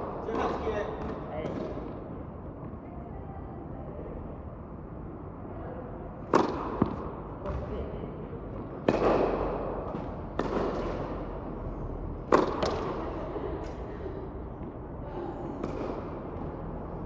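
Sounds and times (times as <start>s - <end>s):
racket striking tennis ball: 6.3s - 7.7s, 8.8s - 11.6s, 12.2s - 13.2s, 15.6s - 16.5s.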